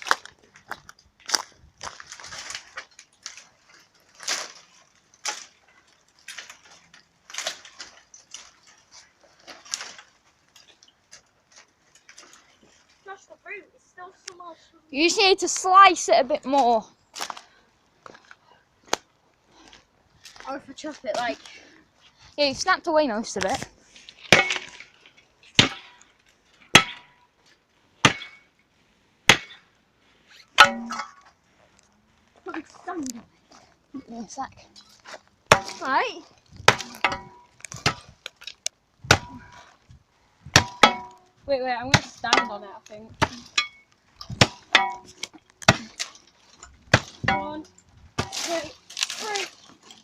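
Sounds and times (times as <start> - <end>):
blade chopping tree trunk: 24.3 - 24.9, 25.6 - 26.0, 28.0 - 28.4, 29.3 - 29.6, 35.5 - 39.5, 40.5 - 41.3, 41.9 - 46.2, 46.8 - 49.6.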